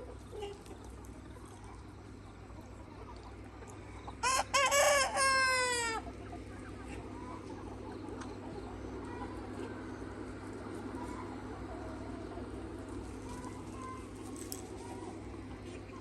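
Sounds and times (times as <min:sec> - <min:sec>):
rooster crowing: 0:04.2 - 0:06.1.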